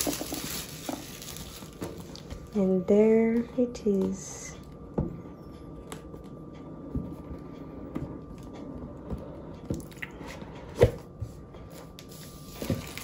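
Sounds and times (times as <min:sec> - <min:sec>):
plastic film rustling: 0:00.0 - 0:02.6, 0:12.0 - 0:13.0.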